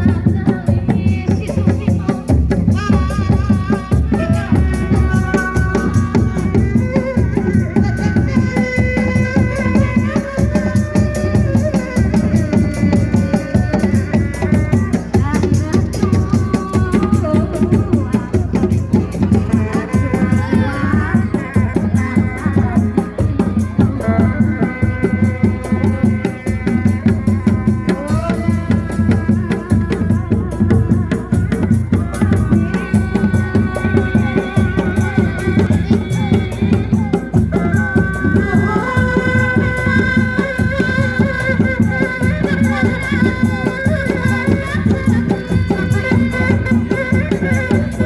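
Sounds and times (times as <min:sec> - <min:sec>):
dense drumming and percussion: 0:00.0 - 0:48.0.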